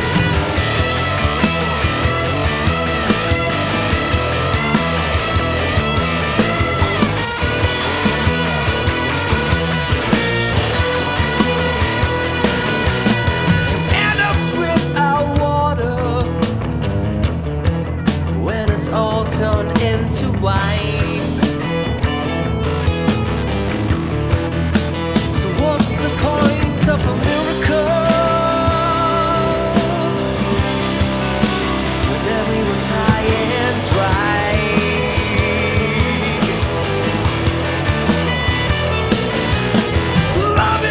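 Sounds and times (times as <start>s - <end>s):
drum hits: 0.0s - 14.6s, 29.9s - 40.9s
electric guitar lead: 0.0s - 19.8s, 20.5s - 40.9s
bass line: 0.0s - 40.9s.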